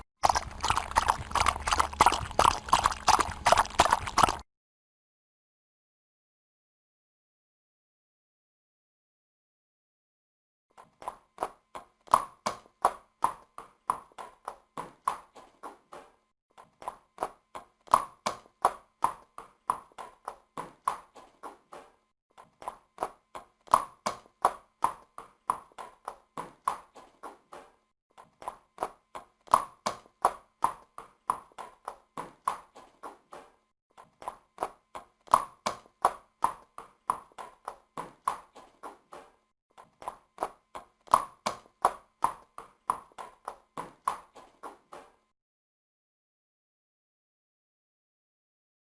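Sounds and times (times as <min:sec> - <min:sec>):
horse hooves clip-clopping: 0:00.2 - 0:04.4.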